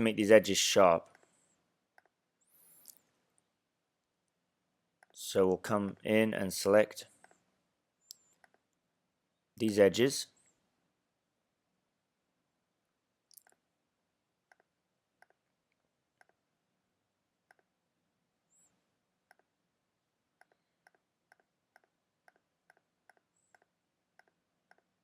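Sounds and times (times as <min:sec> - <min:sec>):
computer mouse clicks: 0:08.0 - 0:08.7, 0:14.5 - 0:15.4, 0:17.5 - 0:17.7, 0:19.3 - 0:19.5, 0:20.4 - 0:24.9.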